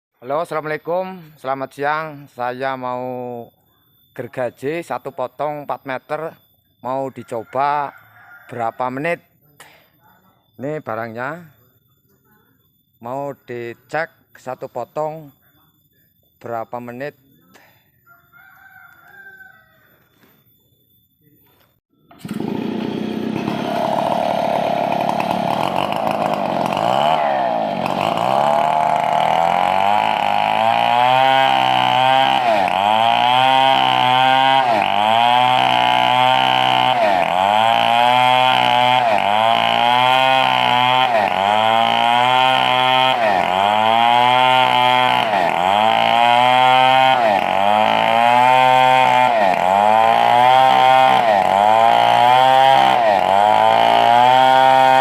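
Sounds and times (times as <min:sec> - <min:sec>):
chainsaw cutting log: 0:22.0 - 0:55.0.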